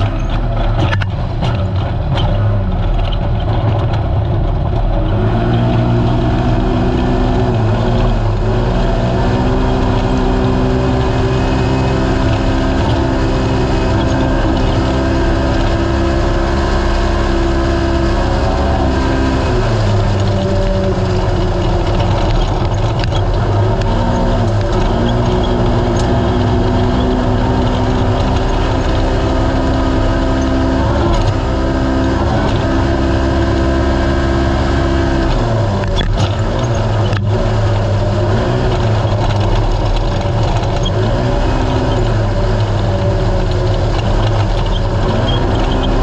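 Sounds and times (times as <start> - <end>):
engine running at high revs: 0.0 - 46.0
terrain noise: 0.0 - 46.0.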